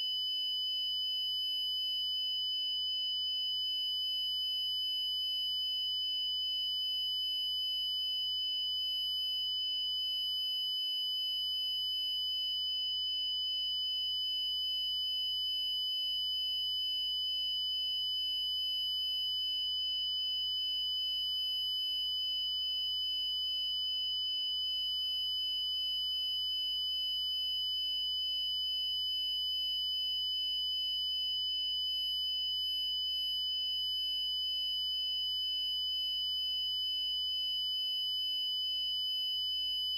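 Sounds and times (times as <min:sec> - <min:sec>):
high-pitched electronic sine tone: 0:00.0 - 0:00.5.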